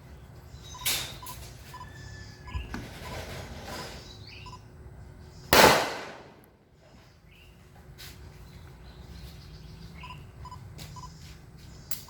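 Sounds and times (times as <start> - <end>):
loud gunshot: 5.5 - 6.4.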